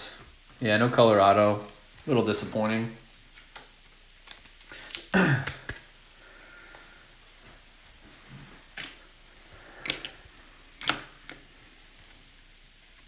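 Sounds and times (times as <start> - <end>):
trading cards rustling and clicking: 3.2 - 5.9.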